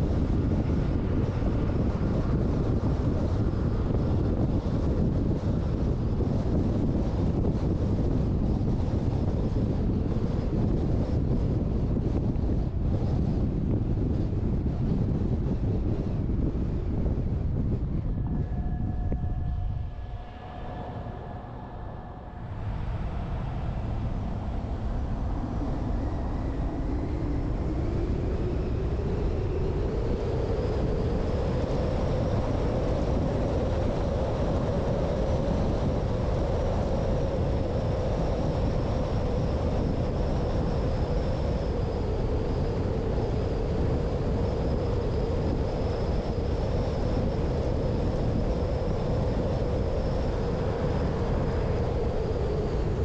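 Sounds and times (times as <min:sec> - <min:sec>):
vehicle engine and road rumble: 0:00.0 - 0:35.9.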